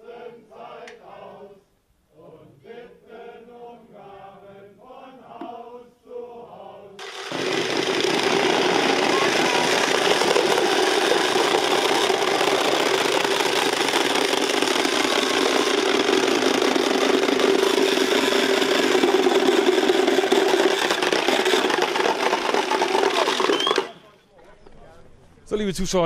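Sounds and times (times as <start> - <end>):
wooden rattles clicking: 7.0 - 23.9.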